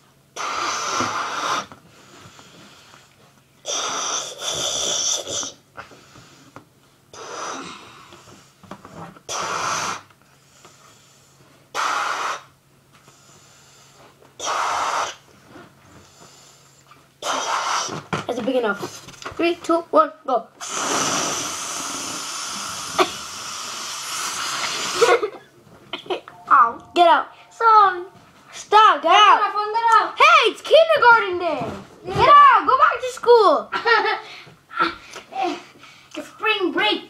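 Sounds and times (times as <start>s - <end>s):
person blowing up balloon: 0.3s - 1.8s, 3.6s - 5.6s, 7.1s - 8.2s, 9.2s - 10.1s, 11.7s - 12.6s, 14.4s - 15.3s, 17.2s - 18.1s, 20.6s - 25.5s.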